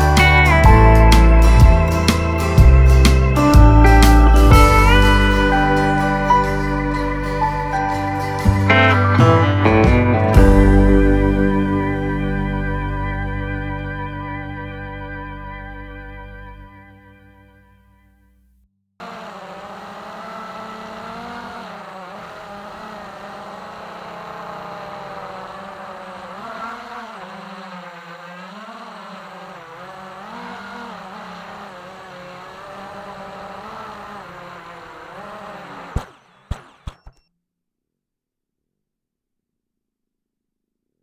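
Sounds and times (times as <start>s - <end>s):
model plane engine running: 19.0s - 37.1s.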